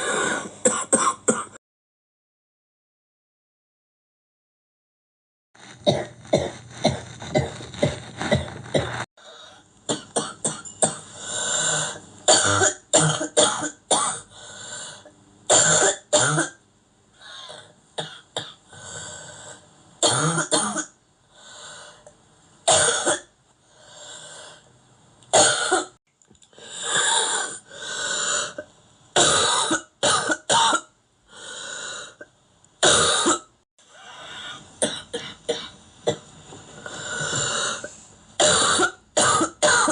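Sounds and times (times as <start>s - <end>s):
person coughing: 0.0s - 1.6s, 5.9s - 9.0s, 12.3s - 14.3s, 38.4s - 39.9s.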